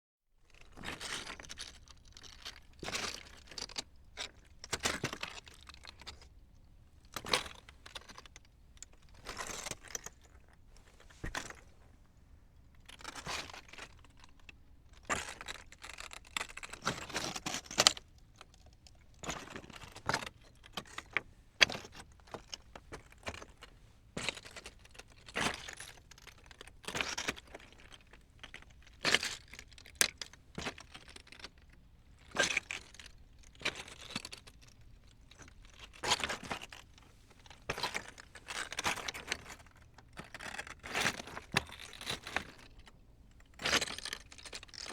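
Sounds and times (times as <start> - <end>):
footsteps on loose rocks: 9.1 - 11.8, 35.3 - 43.0.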